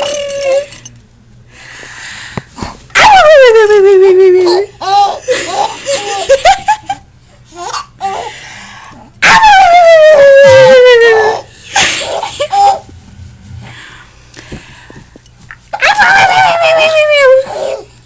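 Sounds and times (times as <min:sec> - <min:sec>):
baby giggling: 0:04.3 - 0:06.8, 0:11.1 - 0:12.9.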